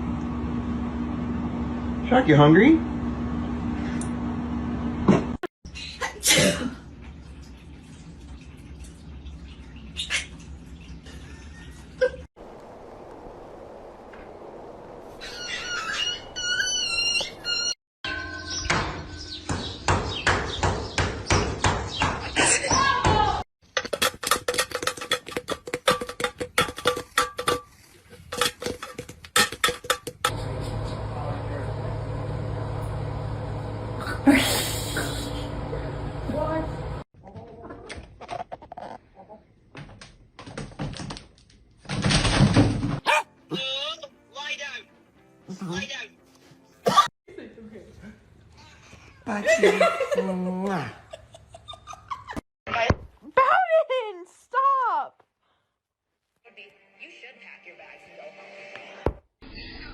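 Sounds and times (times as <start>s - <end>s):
steady low hum: 30.3s - 37.0s.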